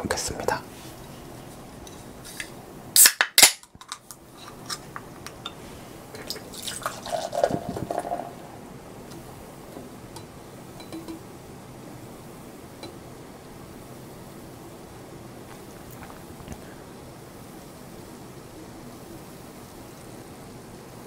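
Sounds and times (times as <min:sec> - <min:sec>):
liquid trickling and dripping: 0:05.4 - 0:11.2
glass and tableware clinking: 0:10.8 - 0:11.2.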